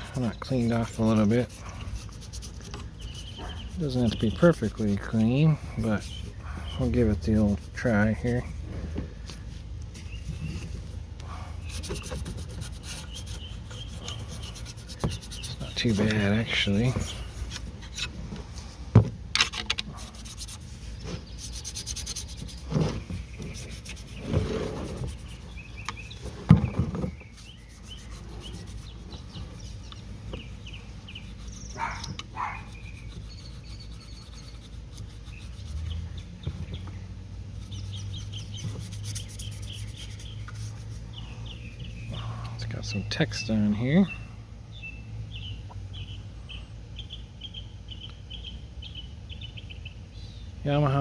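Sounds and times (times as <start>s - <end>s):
scrubbing on exhaust pipe: 0.0s - 43.8s.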